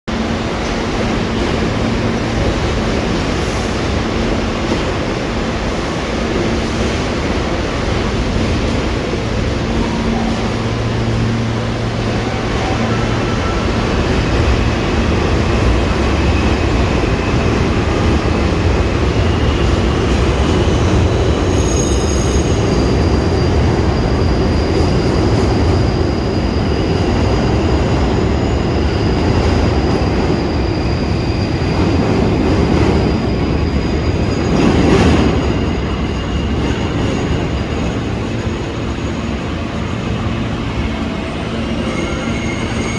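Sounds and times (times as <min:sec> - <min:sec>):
subway train rumbling: 0:00.0 - 0:42.9
high-pitched wheel squeal: 0:41.2 - 0:42.9.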